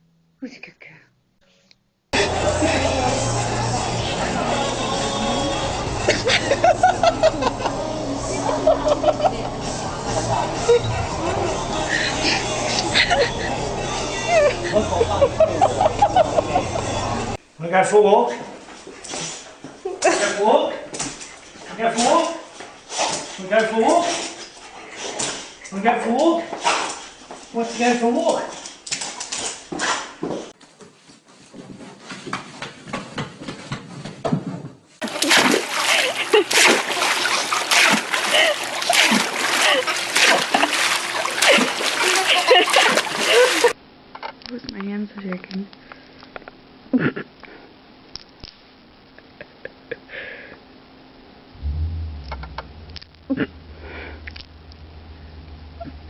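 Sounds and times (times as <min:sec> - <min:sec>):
low hum: 0:51.5 - 0:56.0.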